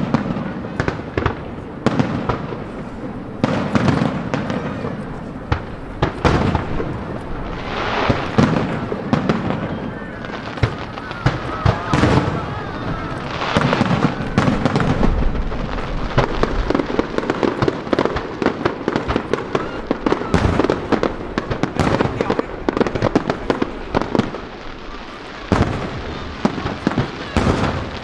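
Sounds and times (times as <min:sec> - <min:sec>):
fireworks bursting and crackling: 0:00.0 - 0:28.0.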